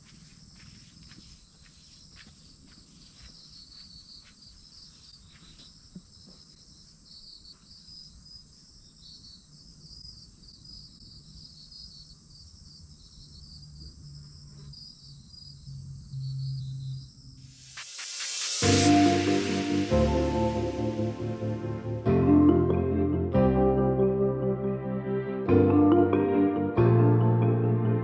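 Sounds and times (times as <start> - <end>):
crickets chirping: 0.0 - 21.1
low hum: 17.5 - 25.1.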